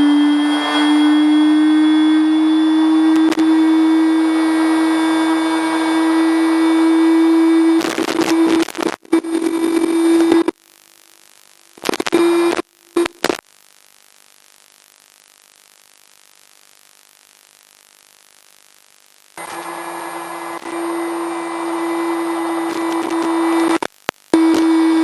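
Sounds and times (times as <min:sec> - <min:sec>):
electromagnetic buzzing tone: 0:00.0 - 0:25.0.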